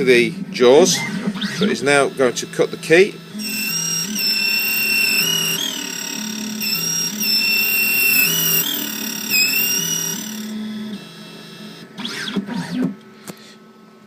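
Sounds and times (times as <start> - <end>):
high whine of key cutter: 0.0 - 13.1
low motor hum: 3.4 - 11.5.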